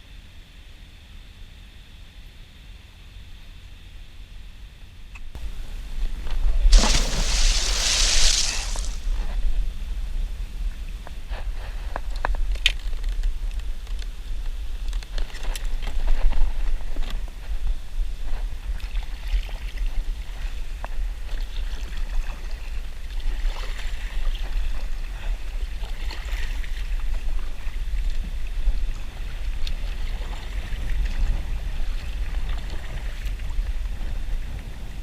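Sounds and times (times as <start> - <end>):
water lapping against kayak hull: 6.8 - 9.0.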